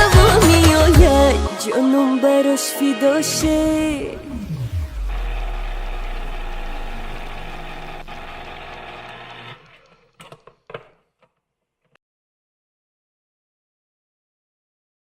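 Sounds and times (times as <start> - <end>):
deep bass note: 3.4 - 9.2.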